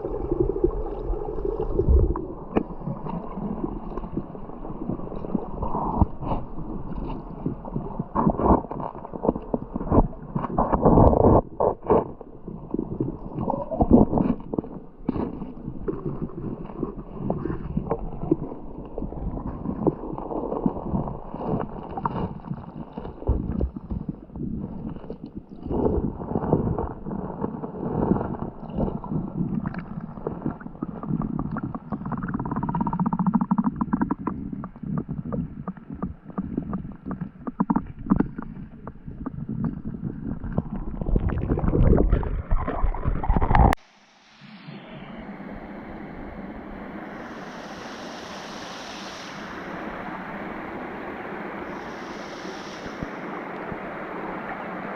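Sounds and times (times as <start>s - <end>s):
stream bubbling over small waterfalls: 0.0s - 11.5s.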